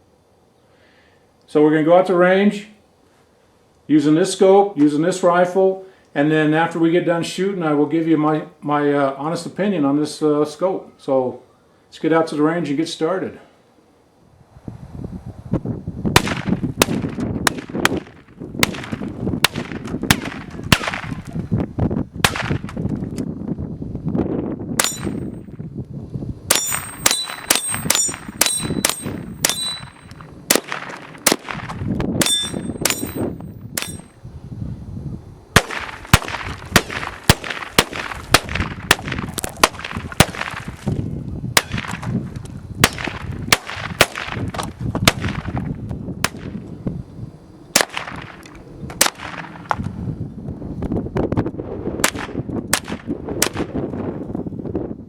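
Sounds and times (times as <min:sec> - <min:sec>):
rifle shots: 0:16.2 - 0:21.2, 0:24.8 - 0:25.3, 0:26.5 - 0:34.0, 0:35.6 - 0:40.7, 0:42.8 - 0:44.5, 0:47.8 - 0:48.4, 0:49.0 - 0:49.6
bright metallic pings: 0:24.8 - 0:25.3, 0:26.5 - 0:30.2, 0:32.2 - 0:34.2.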